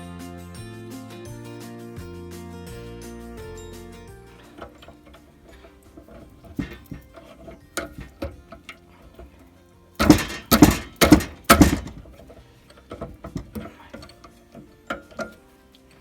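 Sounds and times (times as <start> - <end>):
faint radio music: 3.2 - 16.0
metal tools clinking: 4.3 - 16.0
loud clattering metal scrapes: 4.4 - 15.4.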